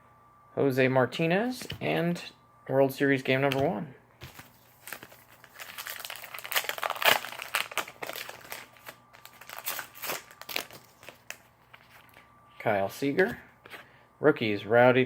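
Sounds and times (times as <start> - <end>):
plastic wrapper crinkling and tearing: 4.2 - 12.2.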